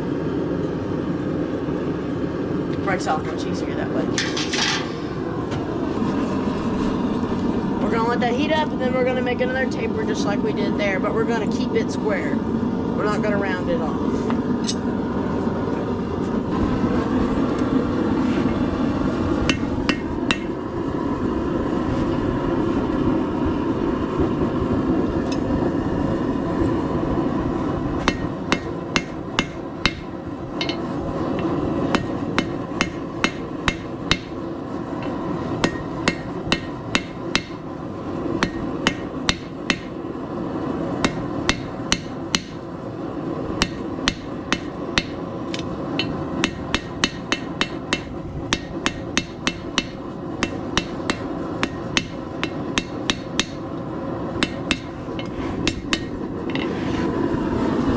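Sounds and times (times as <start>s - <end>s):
forge roaring: 0.0s - 57.9s
hammer striking steel on anvil: 19.5s - 20.5s, 28.0s - 30.9s, 31.9s - 34.4s, 35.6s - 37.6s, 38.4s - 39.9s, 41.0s - 42.6s, 43.6s - 45.2s, 46.0s - 53.6s, 54.4s - 56.8s.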